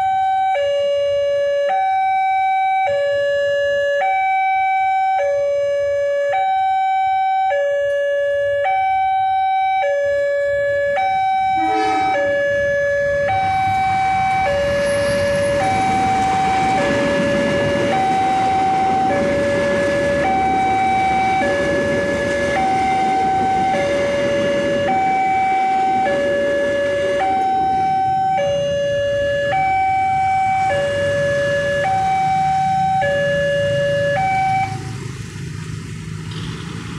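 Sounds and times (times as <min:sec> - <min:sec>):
two-tone crossing siren: 0:00.0 - 0:35.5
broad rushing noise: 0:11.6 - 0:36.9.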